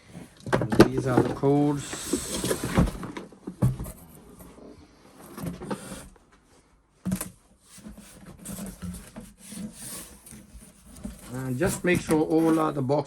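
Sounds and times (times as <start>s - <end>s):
packaging rustling: 7.1s - 12.8s.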